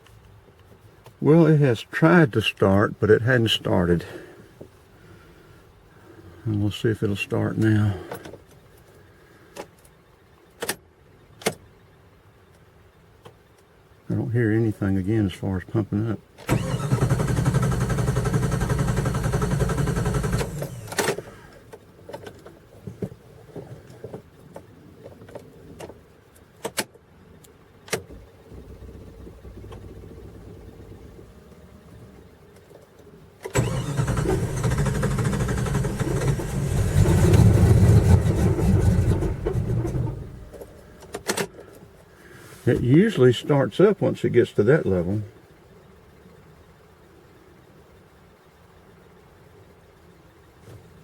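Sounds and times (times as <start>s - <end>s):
engine starter cranking: 16.4s - 21.6s, 33.4s - 41.5s.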